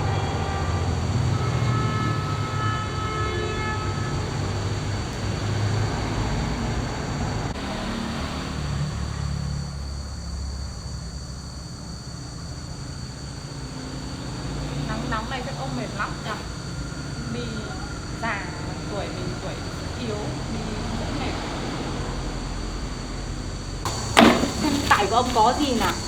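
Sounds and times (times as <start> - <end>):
vehicle engine rumbling: 23.1 - 26.0.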